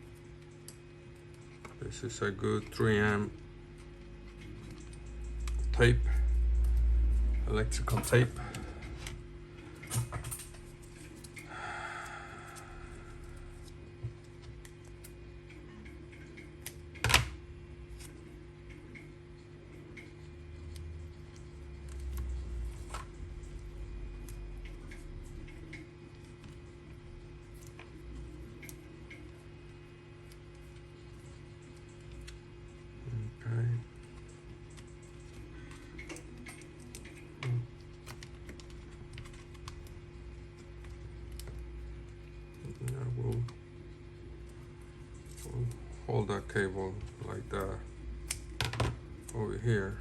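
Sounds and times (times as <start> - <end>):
steady low hum: 0.0 - 50.0
tape crackle: 33.8 - 50.0.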